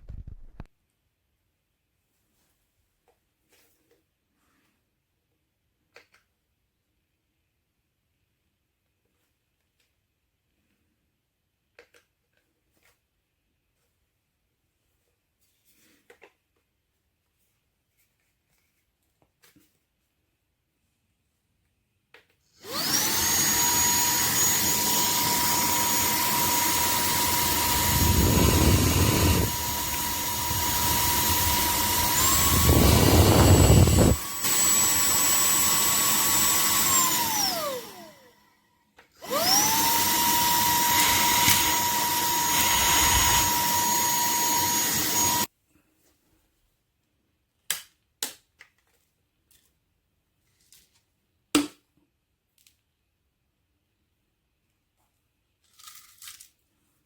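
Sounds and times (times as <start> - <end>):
handheld vacuum cleaner whine: 22.6 - 38.6, 39.2 - 45.5.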